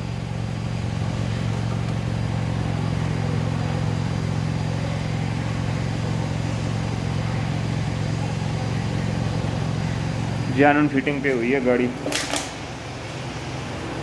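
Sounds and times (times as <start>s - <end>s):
car engine idling: 0.0s - 14.0s.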